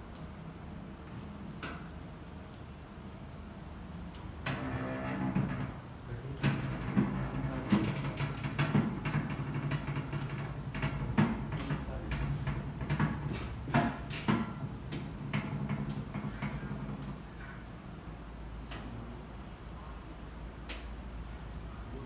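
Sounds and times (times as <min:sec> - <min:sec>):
treatment table knocks and creaks: 0:04.5 - 0:17.6.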